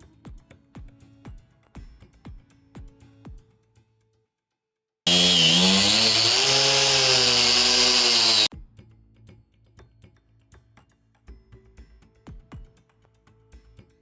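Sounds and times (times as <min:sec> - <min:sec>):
electric saw cutting board: 0:05.1 - 0:08.5.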